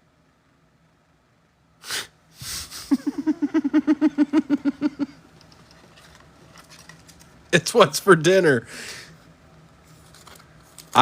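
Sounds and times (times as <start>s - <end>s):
man snorting: 1.8s - 3.2s
man laughing: 2.4s - 5.3s.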